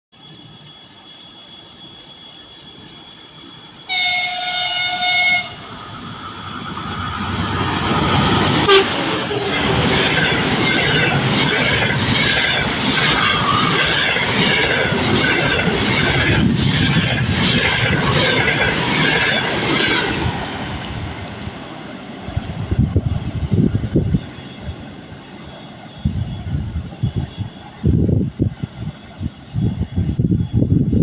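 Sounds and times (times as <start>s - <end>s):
train passing rumble: 0.2s - 31.0s
train horn blast: 3.9s - 5.8s, 8.5s - 9.3s.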